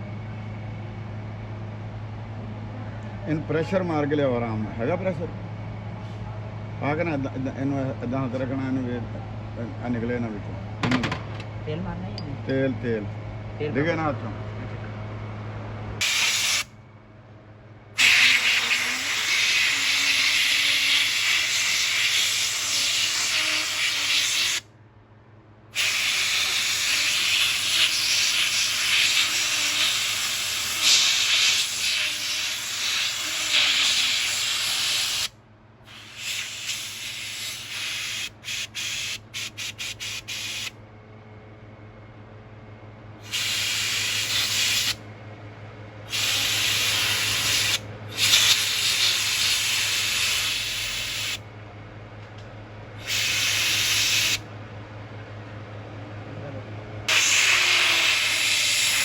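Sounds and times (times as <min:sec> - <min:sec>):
low steady hum: 0:00.0 - 0:24.0, 0:24.6 - 0:53.4
compressed air blow gun hissing: 0:16.0 - 0:16.7, 0:18.0 - 0:24.6, 0:25.8 - 0:35.3, 0:35.9 - 0:40.7, 0:43.2 - 0:45.0, 0:46.1 - 0:51.4, 0:53.0 - 0:54.4, 0:57.1 - 0:59.0.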